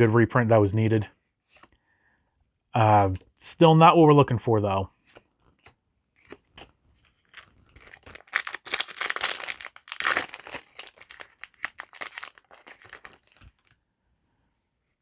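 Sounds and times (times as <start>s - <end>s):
foil wrapper tearing and crinkling: 7.2s - 13.7s.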